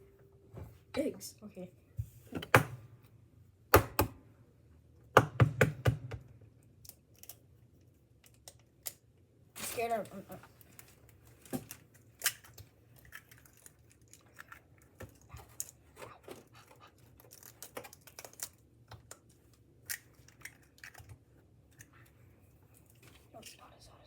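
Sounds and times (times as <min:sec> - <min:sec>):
eggshells cracking and clicking: 0:06.8 - 0:07.5, 0:11.7 - 0:15.8, 0:17.2 - 0:22.0.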